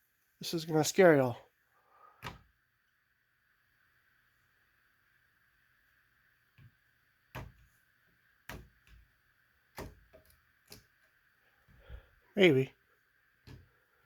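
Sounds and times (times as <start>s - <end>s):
faint sharp clicks and knocks: 8.4s - 11.9s.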